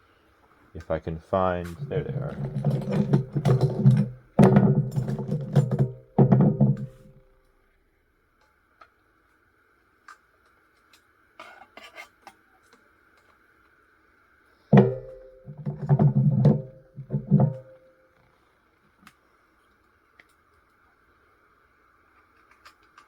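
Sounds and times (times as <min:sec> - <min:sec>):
metallic clanks and knocks: 0:01.6 - 0:07.4, 0:14.8 - 0:18.1.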